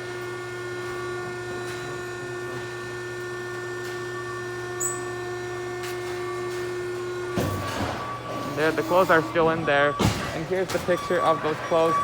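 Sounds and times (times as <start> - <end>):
baler motor humming: 0.0 - 12.0.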